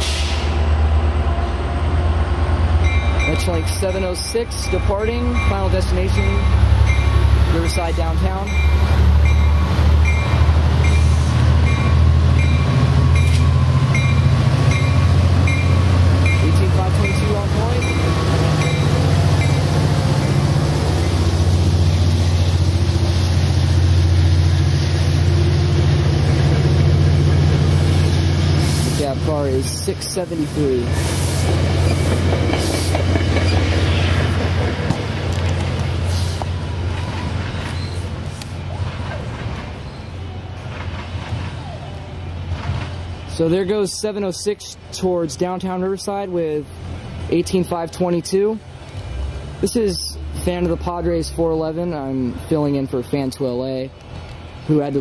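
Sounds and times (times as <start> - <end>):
train wheels on rails: 0.0 - 49.9
diesel locomotive engine throbbing: 0.0 - 53.2
train rumbling past: 0.0 - 55.0
locomotive bell ringing: 2.8 - 20.4.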